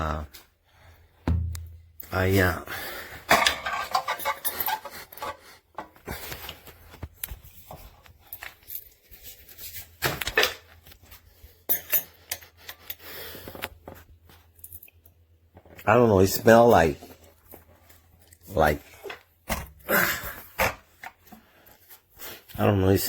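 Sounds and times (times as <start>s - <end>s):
rubbing and scraping of objects: 3.2s - 14.6s.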